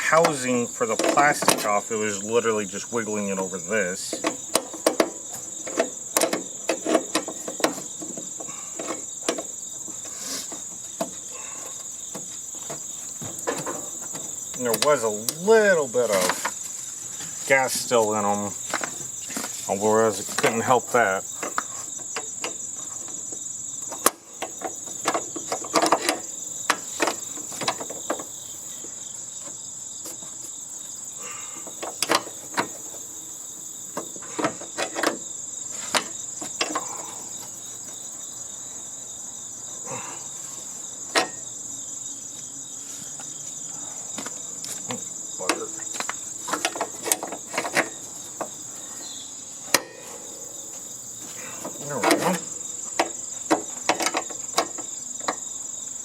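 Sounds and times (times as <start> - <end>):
hand tools clanking on metal: 0.0 - 23.2, 23.8 - 28.4, 31.2 - 33.1, 34.0 - 37.2, 41.1 - 41.5, 44.9 - 55.4
insect chorus: 0.0 - 56.0.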